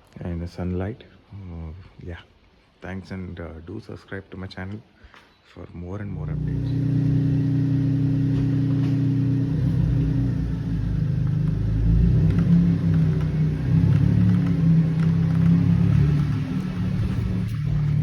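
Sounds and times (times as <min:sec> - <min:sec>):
car engine revving: 0:06.2 - 0:18.0.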